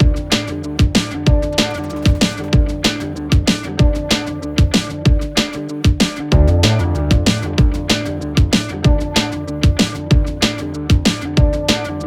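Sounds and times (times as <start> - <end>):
bass: 0.0 - 12.0
electronic drum beat: 0.0 - 12.0
plucked guitar-like notes: 6.3 - 11.9.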